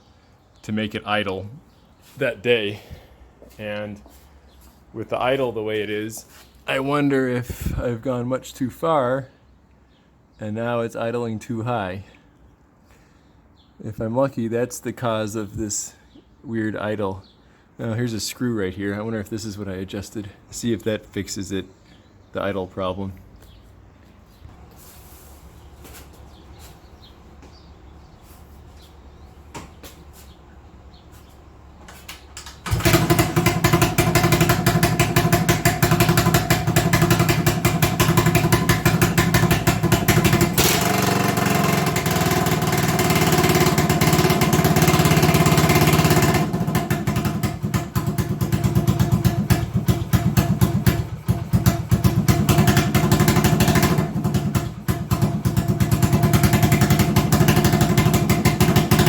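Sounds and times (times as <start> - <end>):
motorcycle engine running: 32.6 - 59.0.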